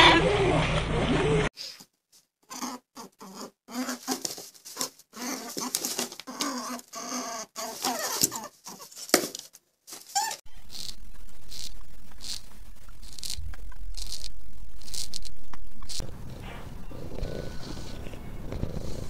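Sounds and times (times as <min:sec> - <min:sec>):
small animal squeaking: 0:05.2 - 0:08.9, 0:10.1 - 0:13.4.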